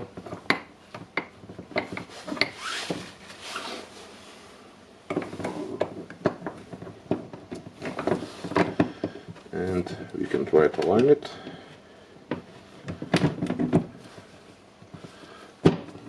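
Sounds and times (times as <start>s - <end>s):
brief scraping rub: 2.1s - 4.4s.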